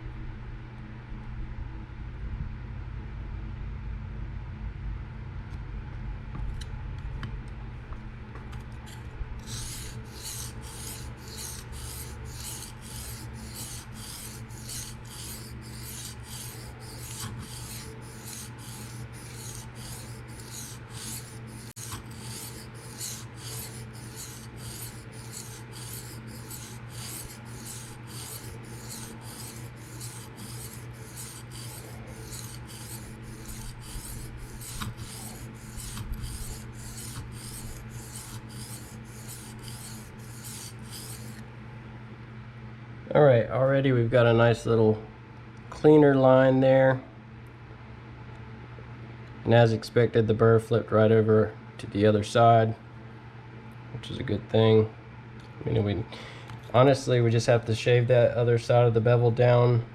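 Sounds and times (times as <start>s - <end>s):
knife scraping on sharpening plate: 8.9s - 41.4s.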